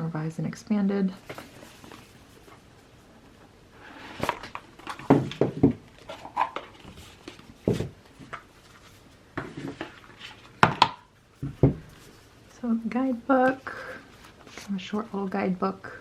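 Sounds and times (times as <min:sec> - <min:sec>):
paper rustling: 0:01.2 - 0:03.1, 0:03.9 - 0:10.7.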